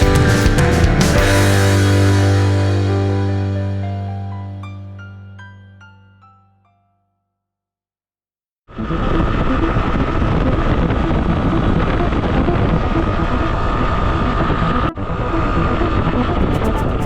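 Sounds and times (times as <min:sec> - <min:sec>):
motorcycle engine running: 0:00.0 - 0:02.9.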